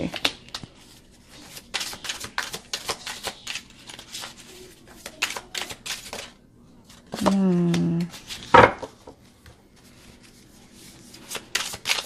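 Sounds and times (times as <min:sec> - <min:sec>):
cards being shuffled: 0:00.0 - 0:06.3, 0:09.8 - 0:12.0.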